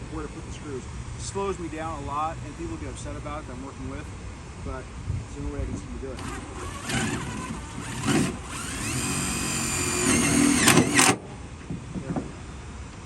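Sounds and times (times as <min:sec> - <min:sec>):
power drill whining: 0:06.2 - 0:11.2.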